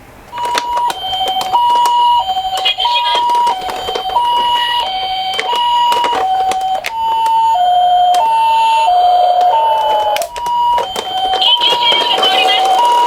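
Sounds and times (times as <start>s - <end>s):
toy two-tone siren: 0.3s - 13.0s
toy cars clicking and clattering: 0.4s - 7.0s, 9.3s - 13.0s.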